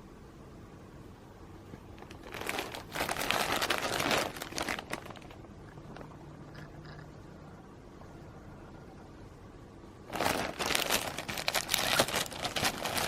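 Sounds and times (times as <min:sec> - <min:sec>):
material crinkling: 0:02.0 - 0:07.0, 0:10.1 - 0:13.0.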